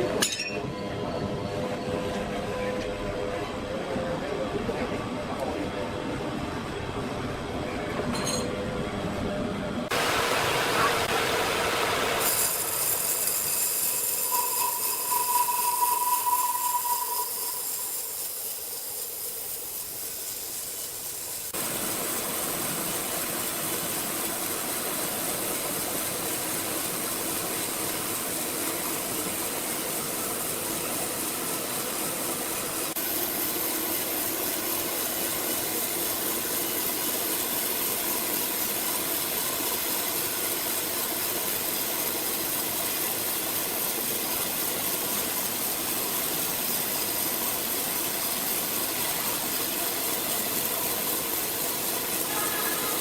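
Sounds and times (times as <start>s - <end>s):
high machine whine: 0.0s - 23.2s, 49.0s - 53.0s
sawmill machinery running: 9.9s - 53.0s.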